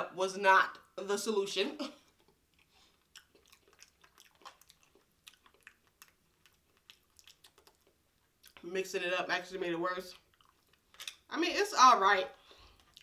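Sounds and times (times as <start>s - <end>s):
wet chewing mouth clicks: 2.2s - 8.6s, 10.1s - 11.2s.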